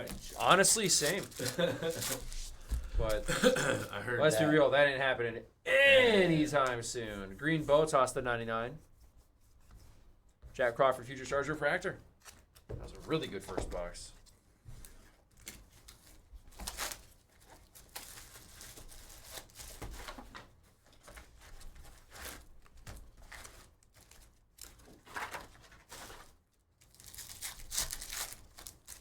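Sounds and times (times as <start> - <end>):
foil wrappers tearing and crinkling: 0.0 - 2.8, 15.3 - 19.9, 21.9 - 29.0
cards being handled: 0.0 - 3.3.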